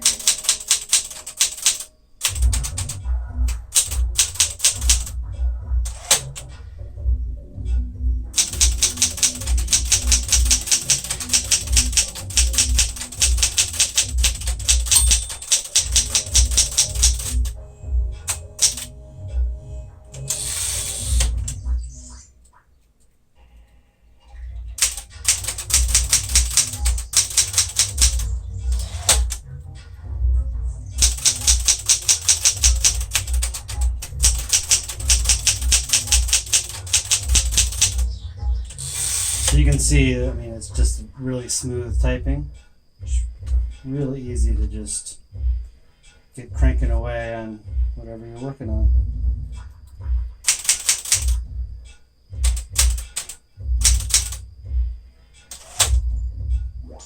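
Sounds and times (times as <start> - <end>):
manual typewriter typing: 0.0 - 5.2, 5.9 - 6.5, 8.4 - 17.6, 18.2 - 18.9, 20.1 - 21.6, 24.8 - 29.4, 31.0 - 38.1, 38.7 - 39.8, 50.4 - 51.4, 52.4 - 54.4, 55.5 - 56.0.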